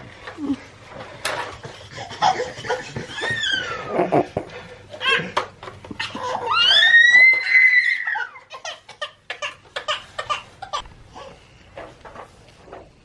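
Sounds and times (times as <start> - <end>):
toddler squealing: 3.1 - 3.9, 6.2 - 8.5.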